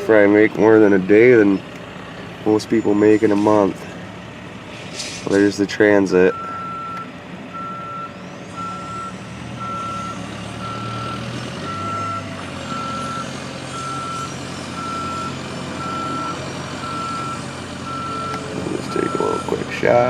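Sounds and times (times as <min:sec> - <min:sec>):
vehicle engine running low: 0:00.0 - 0:20.0
truck reversing alarm beeping: 0:02.4 - 0:03.5, 0:06.2 - 0:20.0.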